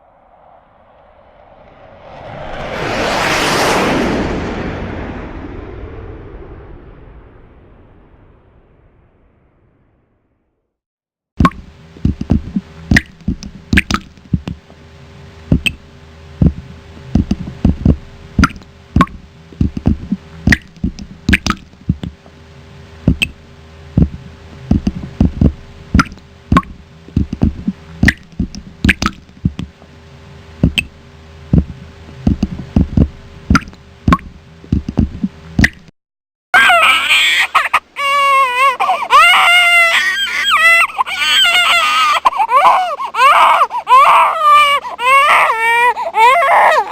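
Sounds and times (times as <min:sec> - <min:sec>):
faint steady hum: 0:11.4 - 0:35.9, 0:36.6 - 0:46.9
infant crying: 0:36.6 - 0:46.9.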